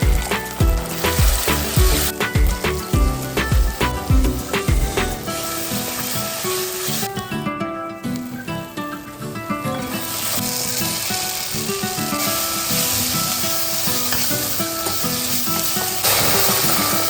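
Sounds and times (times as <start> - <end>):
food sizzling in hot oil: 0.0 - 7.3, 9.9 - 17.0.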